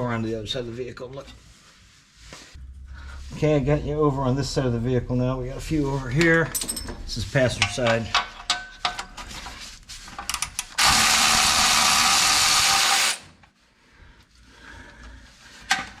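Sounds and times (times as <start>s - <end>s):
cordless electric ratchet running: 10.8s - 13.2s.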